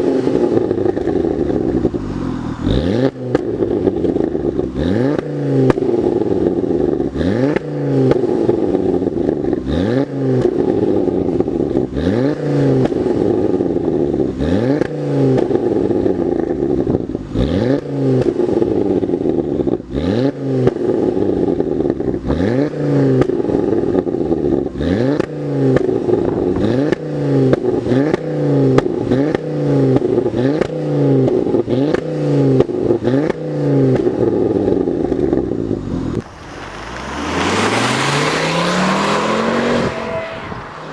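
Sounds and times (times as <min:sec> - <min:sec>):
engine throttle blips: 0:32.6 - 0:40.9.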